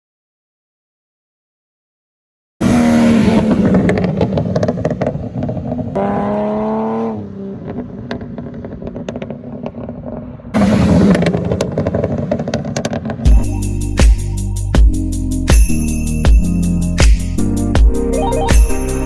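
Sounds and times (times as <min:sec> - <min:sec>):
car engine revving: 0:02.6 - 0:13.3
exhaust crackling and popping: 0:03.6 - 0:06.0, 0:07.6 - 0:13.3.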